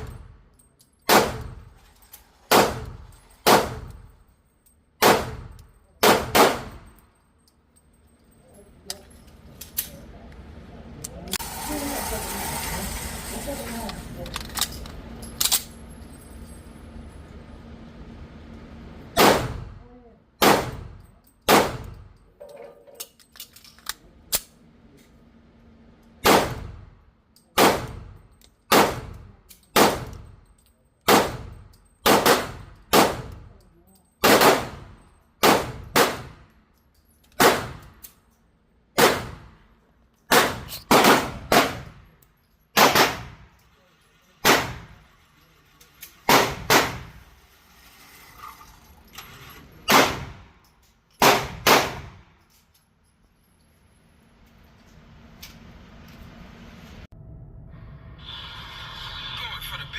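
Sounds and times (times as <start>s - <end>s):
pistol shots: 1.1s - 1.6s, 2.5s - 3.9s, 5.0s - 6.8s, 19.2s - 19.7s, 20.4s - 22.0s, 26.2s - 26.8s, 27.6s - 28.1s, 28.7s - 30.2s, 31.1s - 33.4s, 34.2s - 36.4s, 37.4s - 37.9s, 39.0s - 39.6s, 40.3s - 42.0s, 42.8s - 43.4s, 44.4s - 45.0s, 46.3s - 47.2s, 49.9s - 50.5s, 51.2s - 52.2s.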